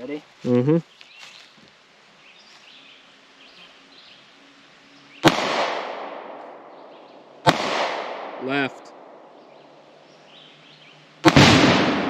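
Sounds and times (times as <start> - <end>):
pistol shots with echo: 5.2 - 6.8, 7.4 - 9.2, 11.2 - 12.0.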